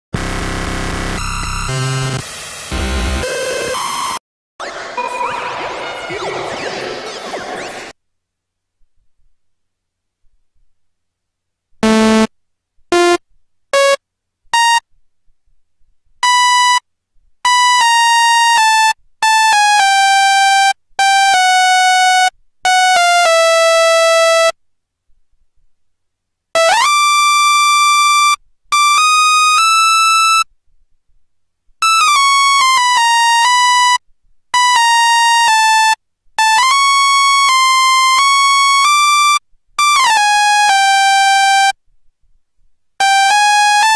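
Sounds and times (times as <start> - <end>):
bright buzzy synth notes: 0.2 - 8.0, 11.8 - 12.3.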